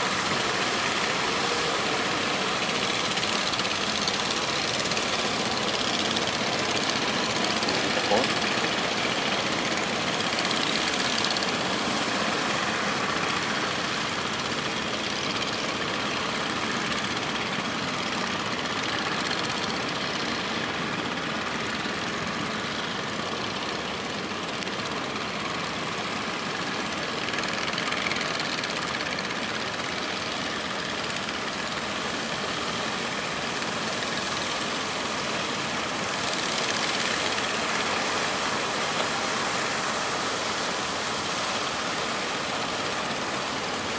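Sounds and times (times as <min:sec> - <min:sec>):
boat engines running: 0:00.0 - 0:43.9
waves breaking: 0:32.4 - 0:43.9.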